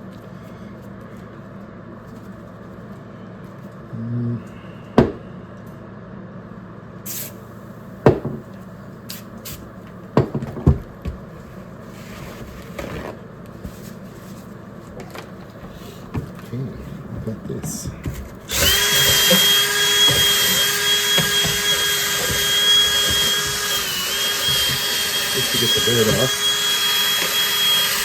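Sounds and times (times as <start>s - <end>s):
steady background hum: 0.0s - 28.0s
short hiss: 7.1s - 7.4s
hard objects knocking and clunking: 10.2s - 11.3s, 17.2s - 24.9s.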